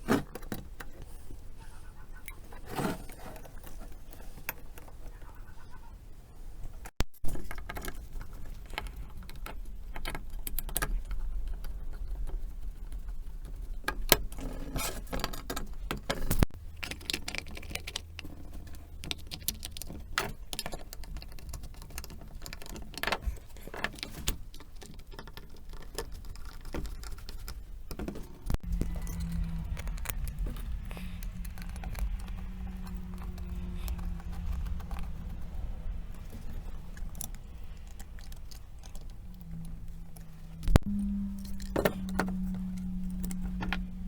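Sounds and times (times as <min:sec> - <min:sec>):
low steady hum: 0:26.0 - 0:44.0
faint jingle: 0:28.6 - 0:37.0, 0:38.8 - 0:44.0.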